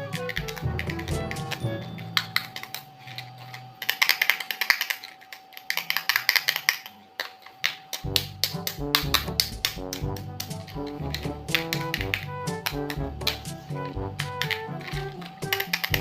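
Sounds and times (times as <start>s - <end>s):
background music: 0.0s - 3.2s, 8.0s - 16.0s
plastic toy parts clicking: 0.0s - 16.0s.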